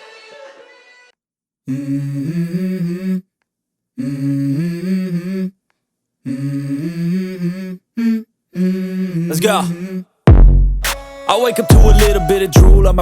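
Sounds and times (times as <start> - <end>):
person humming: 1.7 - 3.3, 4.0 - 5.6, 6.2 - 10.1, 11.6 - 13.0
music: 10.3 - 13.0.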